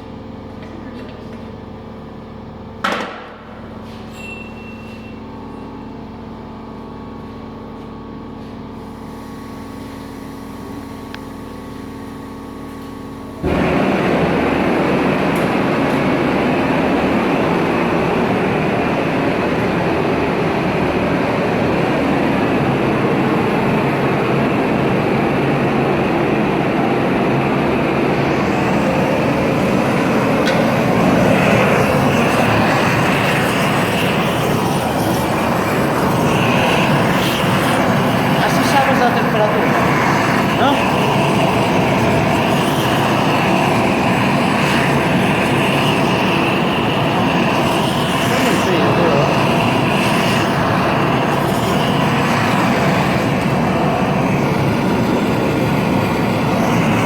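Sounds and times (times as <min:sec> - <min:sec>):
steady machine hum: 0:00.0 - 0:57.0
gas torch rushing: 0:08.4 - 0:57.0.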